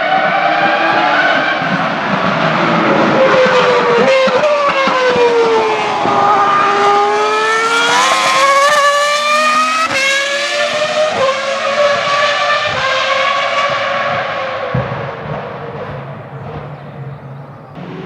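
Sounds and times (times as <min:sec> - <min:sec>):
racing car engine revving: 0:00.0 - 0:18.0.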